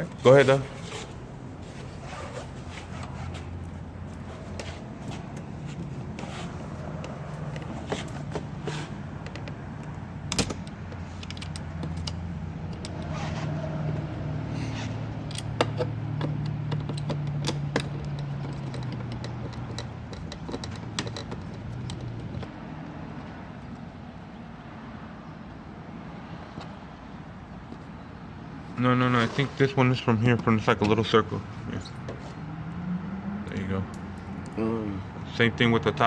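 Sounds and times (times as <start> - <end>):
screwdriver clicks and taps: 15.2 - 22.5.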